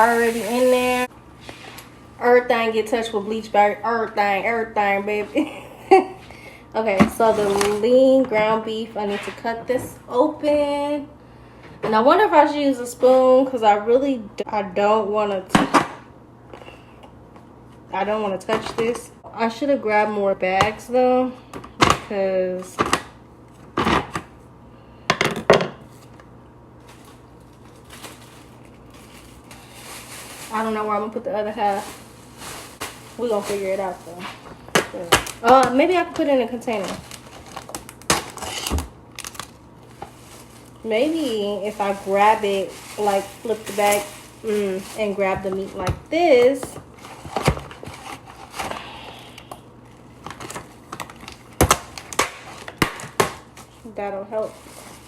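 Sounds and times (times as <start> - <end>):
plastic bag crinkling: 0.0 - 1.1, 26.8 - 48.7, 49.8 - 55.0.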